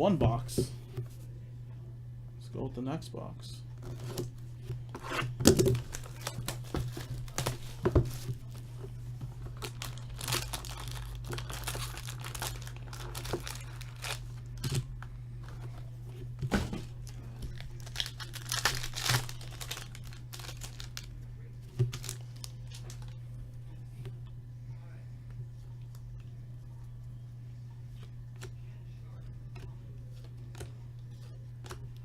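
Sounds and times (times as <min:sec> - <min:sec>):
steady low hum: 0:00.0 - 0:32.0
plastic wrapping crinkling and tearing: 0:05.6 - 0:08.7, 0:09.4 - 0:14.9, 0:17.0 - 0:21.1, 0:21.8 - 0:23.2.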